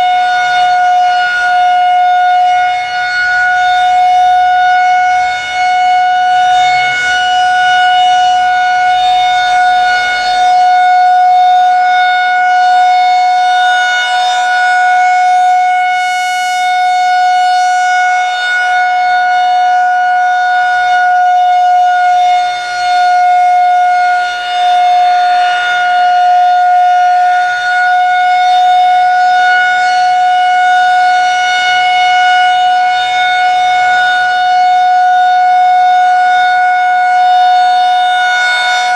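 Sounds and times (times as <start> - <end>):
outdoor warning siren: 0.0 - 38.9.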